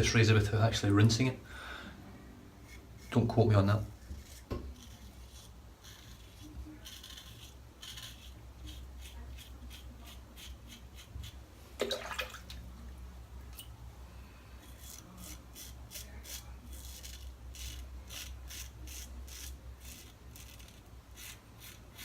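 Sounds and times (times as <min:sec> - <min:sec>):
razor scraping strokes: 0:02.6 - 0:11.5, 0:14.6 - 0:22.0
water splashing: 0:11.8 - 0:12.8.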